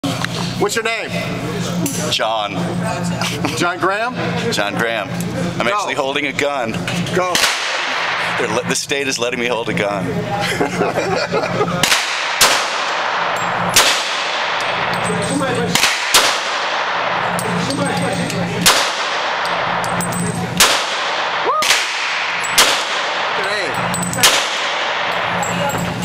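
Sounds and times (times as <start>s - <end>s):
background hum: 0.0s - 26.0s
pistol shots with echo: 7.3s - 8.4s, 11.8s - 25.6s.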